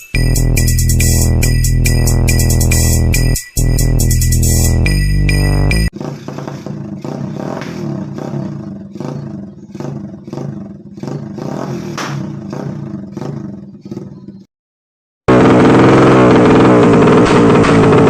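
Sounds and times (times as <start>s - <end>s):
electronic music: 0.0s - 5.9s
minibike engine revving: 5.9s - 14.5s, 15.3s - 18.0s.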